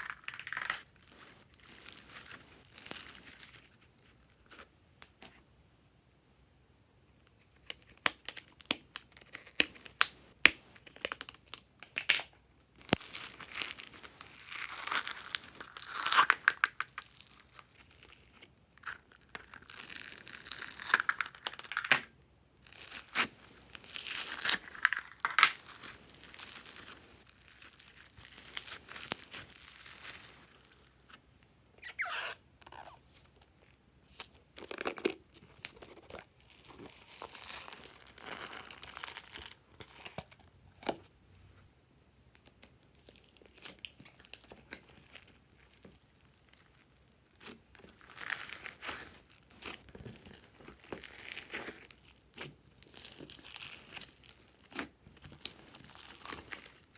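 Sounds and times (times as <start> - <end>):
slime squished by hand: 12.8 - 22.0, 43.0 - 56.9.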